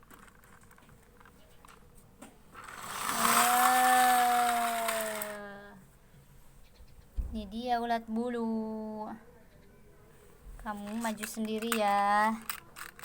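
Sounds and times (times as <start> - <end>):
small motor whirring: 2.6 - 5.6.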